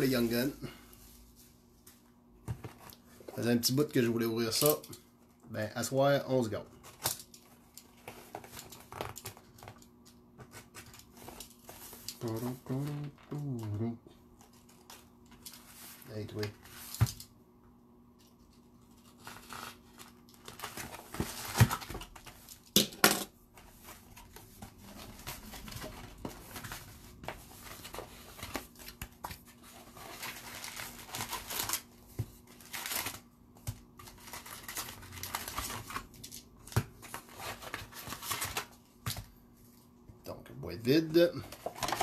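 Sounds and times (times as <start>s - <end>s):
plastic wrapping crinkling and tearing: 29.6s - 31.9s, 32.5s - 38.8s.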